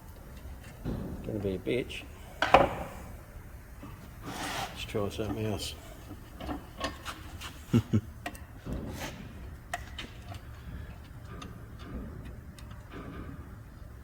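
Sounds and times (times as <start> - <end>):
sharp knocks: 2.4 - 3.1.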